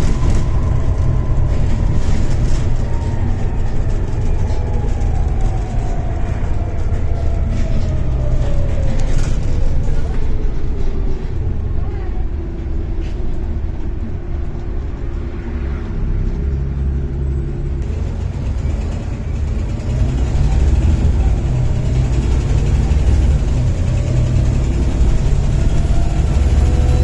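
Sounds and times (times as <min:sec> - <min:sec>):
bus diesel engine drone: 0:00.0 - 0:27.0
turbocharger whine: 0:14.7 - 0:27.0.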